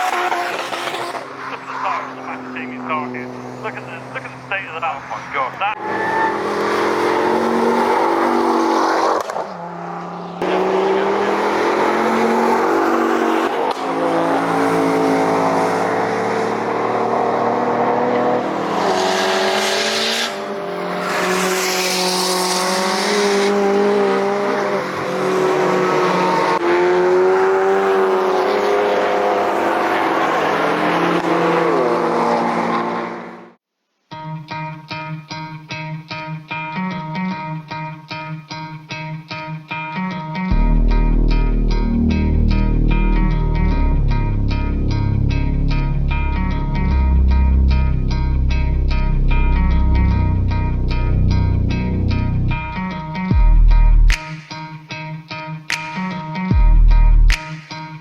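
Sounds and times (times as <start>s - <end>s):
car engines at high revs: 0.0s - 33.6s.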